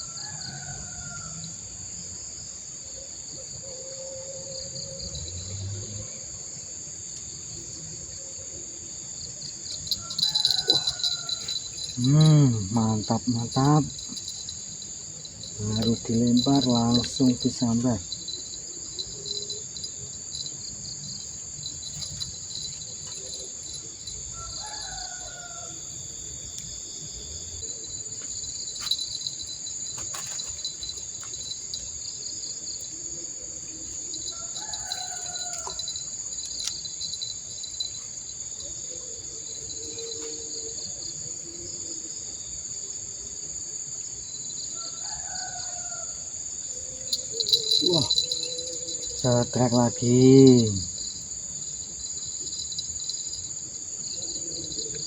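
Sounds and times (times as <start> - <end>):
rooster crowing: 0.0 - 1.6, 9.7 - 14.6, 15.2 - 18.1, 22.0 - 26.5, 34.2 - 36.1, 44.7 - 50.7
insect drone: 0.0 - 55.0.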